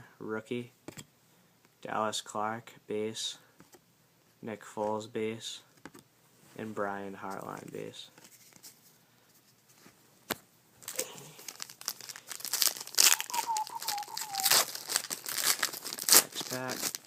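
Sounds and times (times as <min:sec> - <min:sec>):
wrapper crinkling and tearing: 0:10.8 - 0:17.0.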